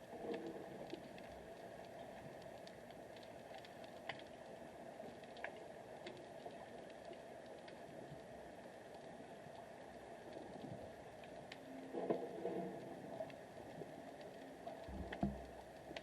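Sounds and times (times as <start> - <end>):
underwater low hiss: 10.0 - 16.0.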